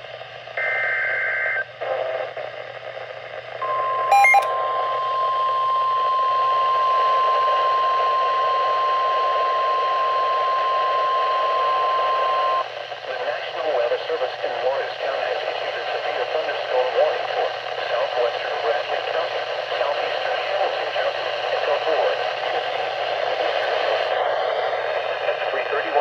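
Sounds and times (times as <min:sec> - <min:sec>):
steady warning alarm tone: 0:03.6 - 0:12.6
radio static: 0:06.6 - 0:26.0.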